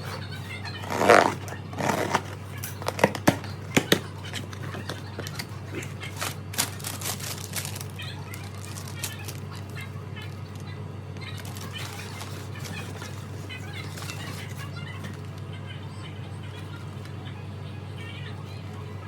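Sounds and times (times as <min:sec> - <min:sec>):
steady low hum: 0:00.0 - 0:19.0
packaging rustling: 0:00.8 - 0:09.9, 0:11.2 - 0:15.3.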